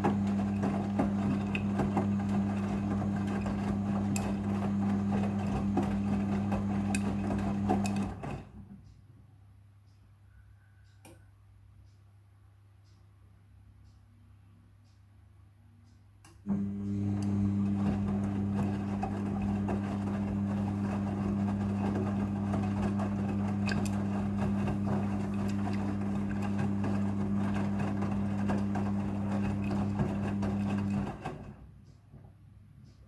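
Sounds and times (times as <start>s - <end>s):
washing machine humming: 0.0s - 8.7s, 16.4s - 32.3s.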